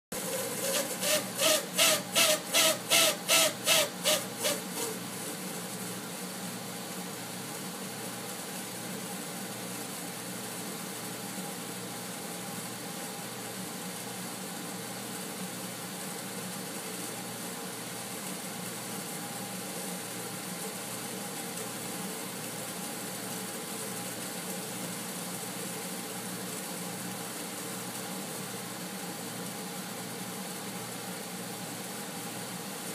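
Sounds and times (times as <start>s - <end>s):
heat pump hiss and hum: 0.1s - 32.9s
valve hissing chirps: 0.3s - 5.0s.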